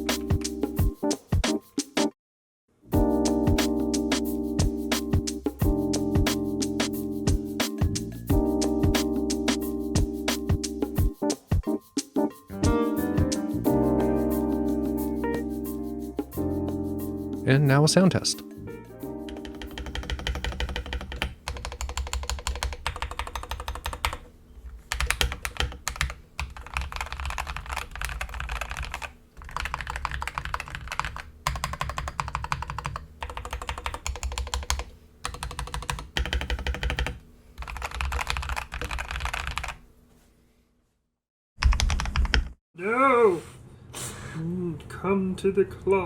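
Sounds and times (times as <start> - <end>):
fast mechanical keyboard typing: 19.3 - 24.3, 24.9 - 39.8, 41.6 - 42.6.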